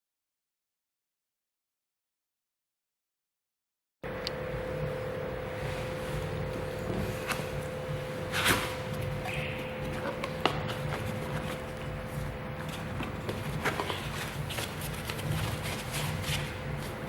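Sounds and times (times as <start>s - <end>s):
steady low hum: 4.0s - 17.0s.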